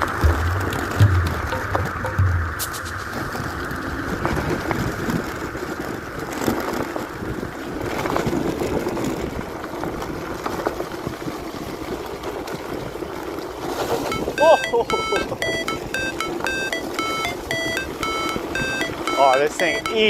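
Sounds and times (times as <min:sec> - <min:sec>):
wind and tyre noise: 0:00.0 - 0:14.2.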